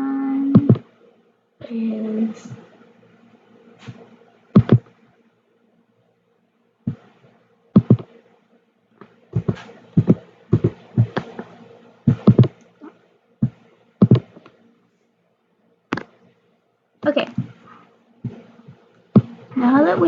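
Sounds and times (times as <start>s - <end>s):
faint steady hum: 0.0s - 20.0s
sharp clicks and knocks: 7.8s - 8.1s, 12.1s - 12.7s, 13.4s - 14.5s.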